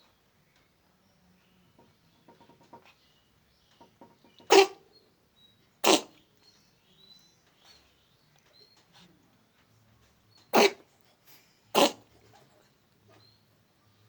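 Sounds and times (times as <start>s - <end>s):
pet sneezing: 4.5s - 4.8s, 5.8s - 6.2s, 10.5s - 12.4s.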